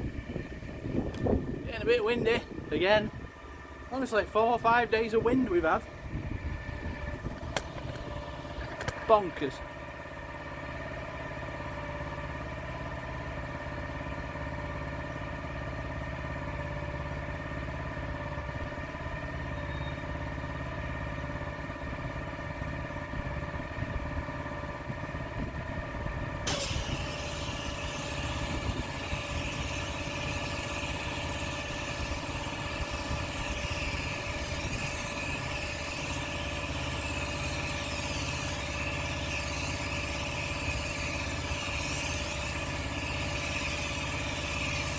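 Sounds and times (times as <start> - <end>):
petrol engine running: 0.0 - 44.9
high-pressure water jet hissing: 26.5 - 44.9.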